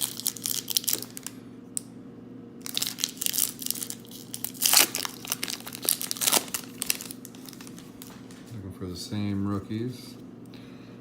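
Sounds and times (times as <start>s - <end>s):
plastic wrapping crinkling and tearing: 0.0s - 1.4s, 2.6s - 8.4s.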